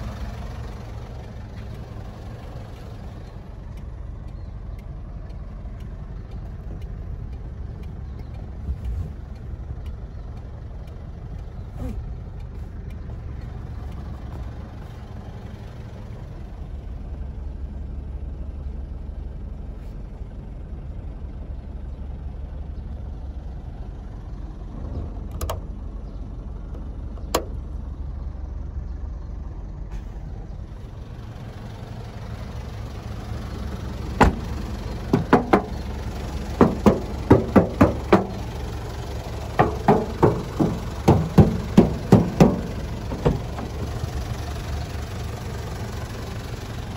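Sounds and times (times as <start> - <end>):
diesel engine idling: 0.0 - 46.9
sharp clicks: 3.7 - 14.6
rapid sharp knocks: 34.2 - 34.5, 35.1 - 35.9, 36.6 - 38.6, 39.5 - 43.9.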